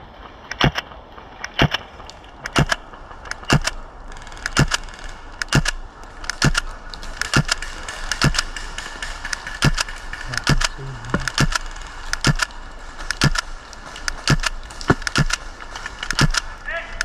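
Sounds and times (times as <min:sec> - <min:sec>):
rustling: 0:00.0 - 0:17.0
footsteps walking: 0:05.5 - 0:16.6.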